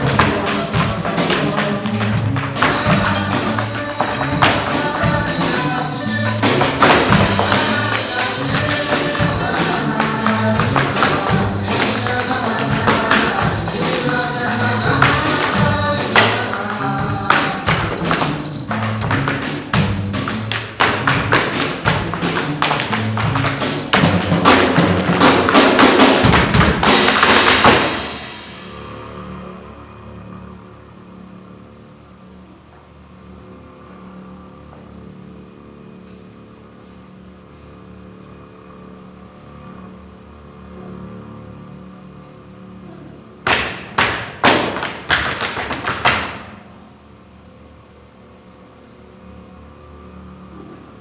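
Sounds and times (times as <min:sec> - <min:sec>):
percussive stage music: 0:00.0 - 0:28.8, 0:43.4 - 0:46.5.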